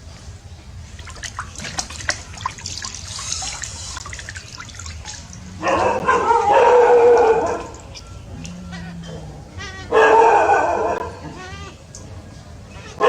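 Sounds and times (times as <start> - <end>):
water splashing in bathtub: 0.9 - 8.6
rough animal cry: 5.1 - 11.9.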